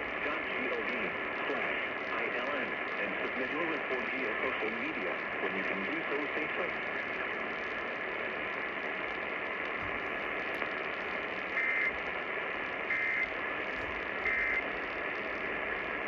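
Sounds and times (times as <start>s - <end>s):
radio static hiss: 0.0s - 16.0s
data tone bursts: 11.6s - 12.0s, 12.9s - 13.3s, 14.2s - 14.6s.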